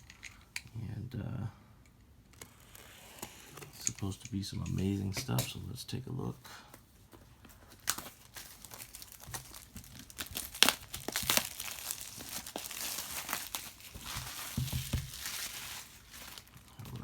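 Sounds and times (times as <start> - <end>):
packaging crinkling and tearing: 7.6 - 17.0.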